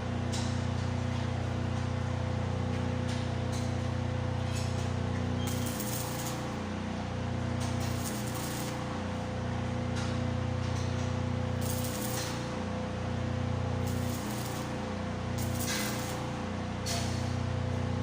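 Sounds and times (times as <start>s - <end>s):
welding machine humming: 1.0s - 18.0s
welding arc crackling and hissing: 5.4s - 6.8s, 7.5s - 9.3s, 11.4s - 12.7s, 13.6s - 17.8s.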